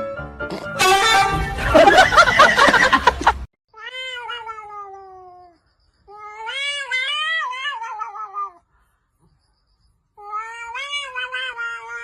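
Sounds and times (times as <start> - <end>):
cat meowing: 3.8 - 8.6, 10.2 - 12.0.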